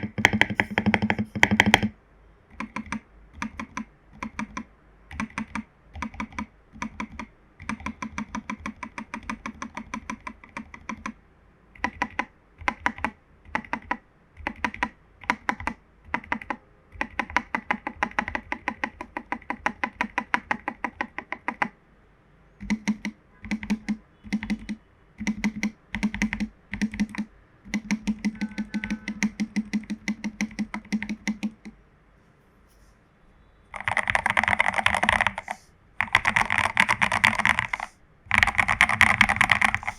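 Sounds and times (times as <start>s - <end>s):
mechanical keyboard typing: 0.0s - 11.2s, 11.8s - 21.8s, 22.6s - 31.8s, 33.8s - 39.9s.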